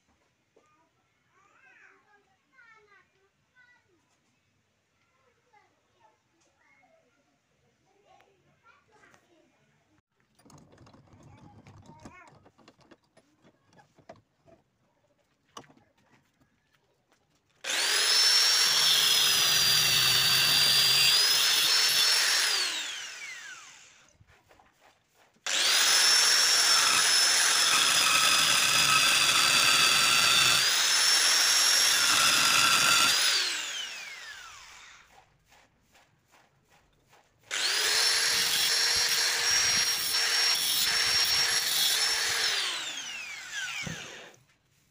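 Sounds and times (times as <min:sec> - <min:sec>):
small electric motor whining: 0:17.6 - 0:24.1, 0:25.4 - 0:35.2, 0:37.5 - 0:44.5.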